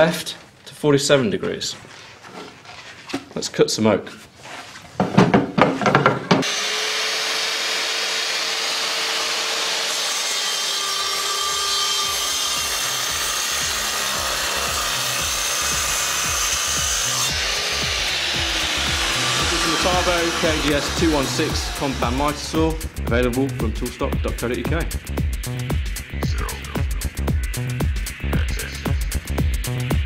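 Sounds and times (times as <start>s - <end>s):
miter saw cutting wood: 6.4s - 23.0s.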